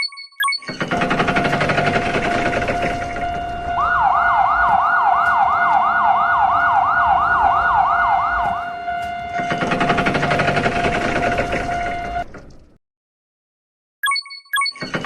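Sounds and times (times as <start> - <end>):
steady high tone: 0.9 - 9.2
whooping siren: 0.9 - 12.3.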